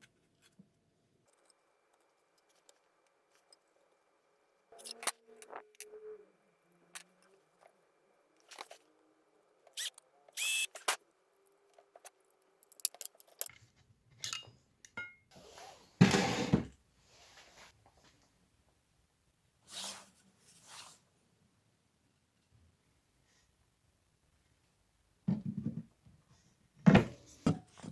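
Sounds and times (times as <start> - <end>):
clicks and taps of small parts: 12.0 - 13.6.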